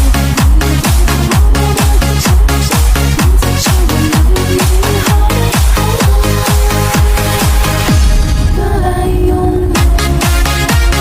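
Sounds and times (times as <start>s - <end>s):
hi-hats: 0.0s - 8.1s
electronic dance music: 0.0s - 11.0s
kick drum: 0.0s - 11.0s.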